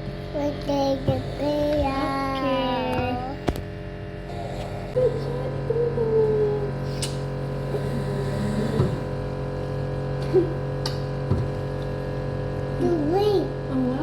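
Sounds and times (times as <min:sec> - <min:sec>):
steady low hum: 0:00.0 - 0:14.0
child vocal sounds: 0:00.3 - 0:03.5
child humming: 0:00.4 - 0:03.5, 0:04.3 - 0:07.0, 0:07.7 - 0:09.1.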